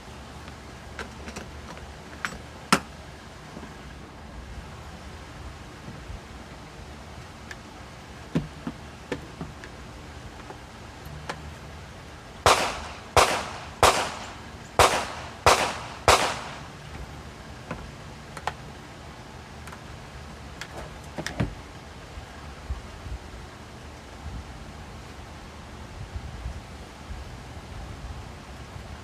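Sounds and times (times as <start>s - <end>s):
rifle shots: 12.4s - 16.7s.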